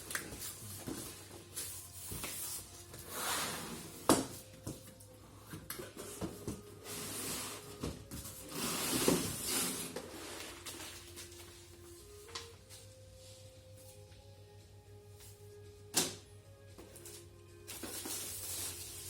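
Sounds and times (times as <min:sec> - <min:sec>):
plastic packaging rustling: 0:17.7 - 0:19.0.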